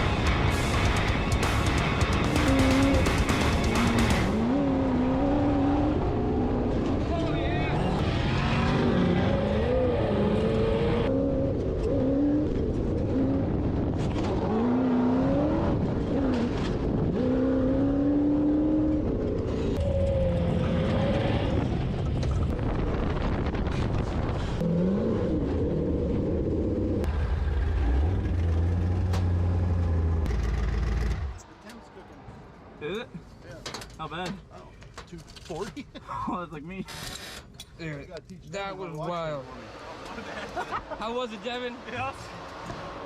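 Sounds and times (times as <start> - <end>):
engine running at full throttle: 0.0 - 6.0.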